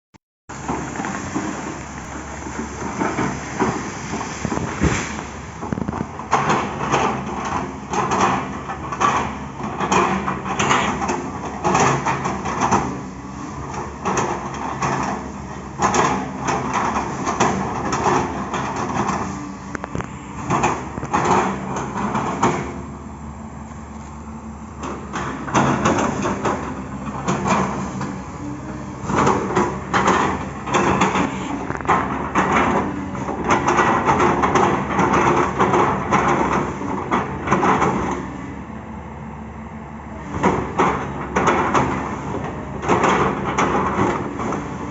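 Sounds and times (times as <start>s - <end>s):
bucket crushing wood trunk: 0.5s - 6.8s
excavator engine running: 0.5s - 44.9s.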